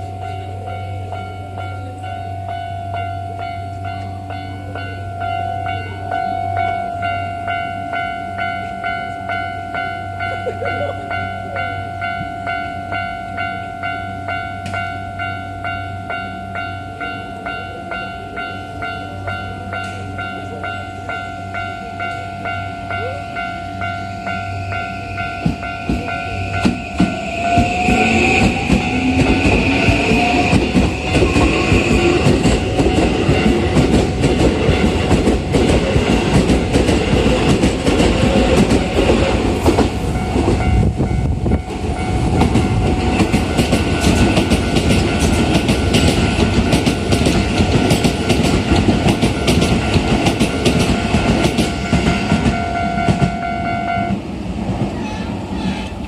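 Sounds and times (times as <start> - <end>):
level crossing bell ringing: 0.0 - 35.0
train wheel and running noise: 0.0 - 56.0
electric train motor whine: 23.3 - 49.4.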